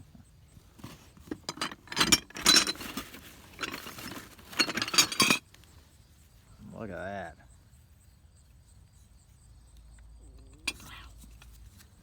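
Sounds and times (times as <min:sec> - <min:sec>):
glass objects clinking: 0:01.5 - 0:02.9, 0:03.6 - 0:05.4.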